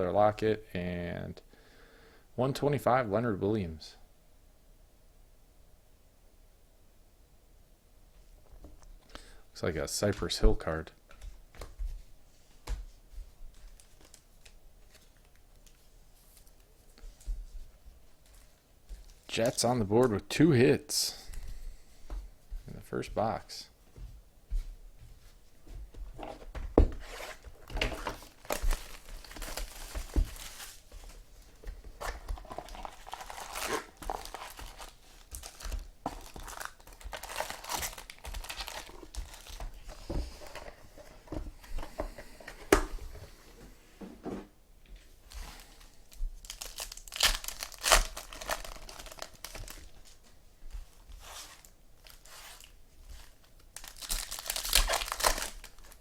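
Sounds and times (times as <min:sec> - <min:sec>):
wrappers torn and crinkled: 0:27.0 - 0:30.8, 0:32.0 - 0:39.8, 0:45.5 - 0:50.2, 0:51.5 - 0:56.0.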